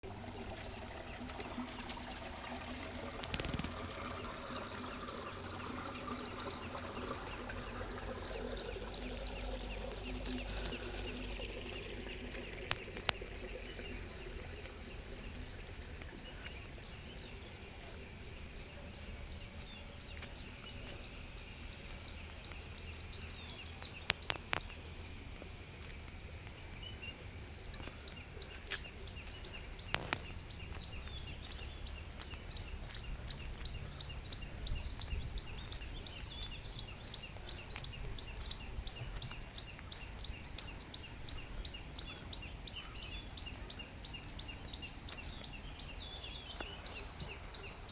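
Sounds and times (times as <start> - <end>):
flowing water rushing: 0.0 - 20.8
birds or insects chirping: 0.0 - 47.9
insects droning: 0.1 - 47.9.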